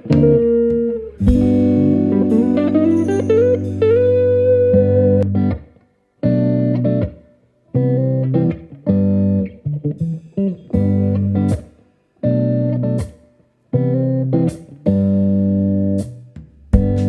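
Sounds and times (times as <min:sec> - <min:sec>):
guitar chords: 0:00.0 - 0:17.0.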